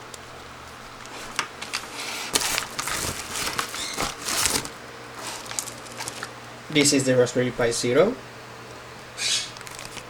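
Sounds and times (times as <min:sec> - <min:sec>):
packaging rustling: 0:01.0 - 0:07.0, 0:09.5 - 0:10.0.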